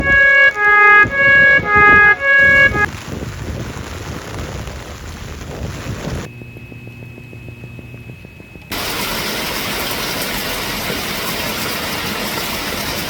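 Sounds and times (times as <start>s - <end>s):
bright pitched intro melody: 0.0s - 2.9s
heavy rain hissing: 8.7s - 13.0s.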